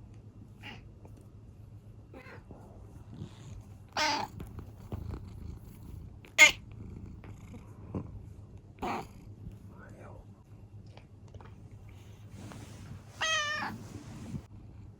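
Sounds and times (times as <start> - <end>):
cat meowing: 4.0 - 4.4, 6.4 - 6.6, 13.2 - 13.8.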